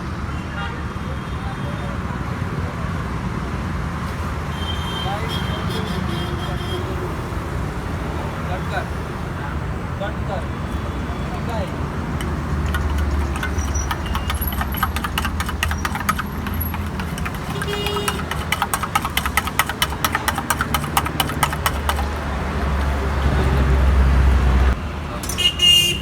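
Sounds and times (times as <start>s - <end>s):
low traffic rumble: 0.0s - 26.0s
metal blade chopping on cooking surface: 12.2s - 22.3s.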